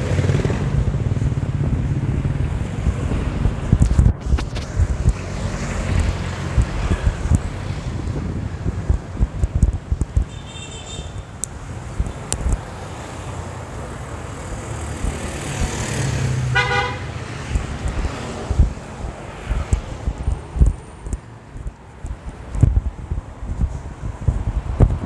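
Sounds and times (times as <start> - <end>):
rumble of passing vehicles: 0.0 - 25.0
wind buffeting microphone: 0.0 - 25.0
vehicle horn: 10.3 - 11.4, 16.5 - 17.3.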